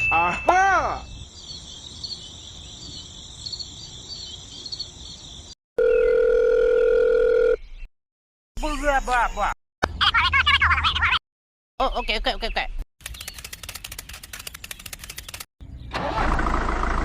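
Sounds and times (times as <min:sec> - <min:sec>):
crickets chirping: 0:01.0 - 0:05.6.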